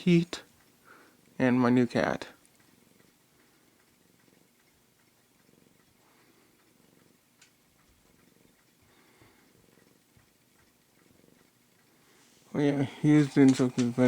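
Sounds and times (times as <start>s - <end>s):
cat purring: 2.2s - 14.0s.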